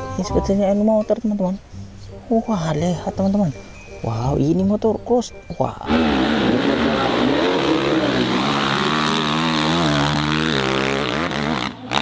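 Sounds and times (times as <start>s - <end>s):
motocross bike engine running: 5.9s - 12.0s.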